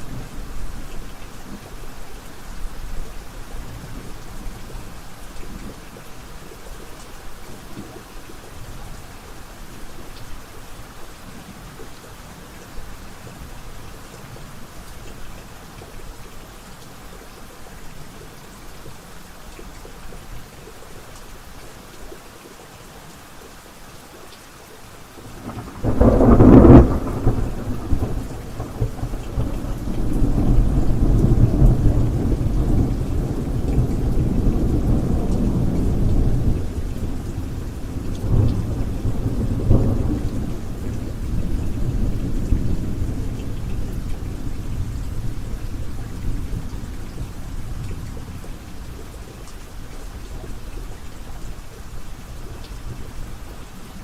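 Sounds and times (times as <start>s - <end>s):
steady rain falling: 0.0s - 54.0s
low rolling thunder: 25.3s - 48.6s
loud thunderclap: 25.4s - 36.6s.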